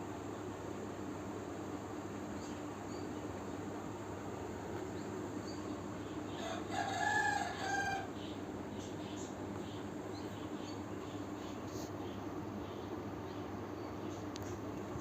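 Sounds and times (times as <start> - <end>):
background hum: 0.0 - 15.0.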